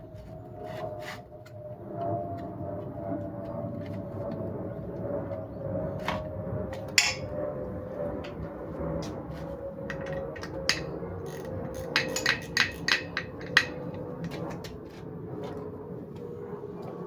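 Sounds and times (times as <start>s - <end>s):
metallic tool knocks and clinks: 7.0s - 7.3s.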